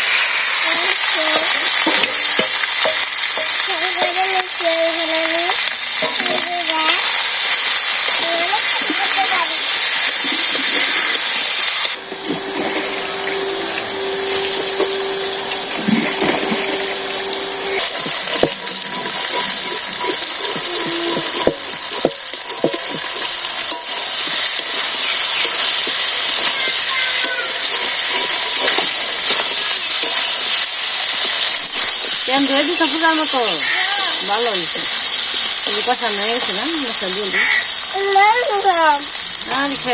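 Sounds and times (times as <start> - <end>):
food sizzling in hot oil: 0.0 - 39.9
spatula scraping pan: 0.3 - 11.5, 17.7 - 34.6.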